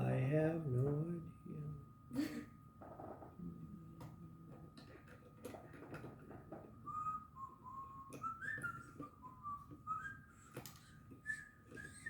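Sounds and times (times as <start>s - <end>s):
faint steady high tone: 0.0s - 5.0s, 6.5s - 12.0s
whistling tune: 6.8s - 12.0s.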